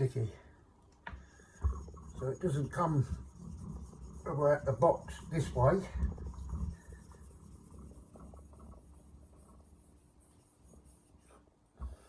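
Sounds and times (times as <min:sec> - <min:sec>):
plate scraping on wet whetstone: 0:01.4 - 0:11.0.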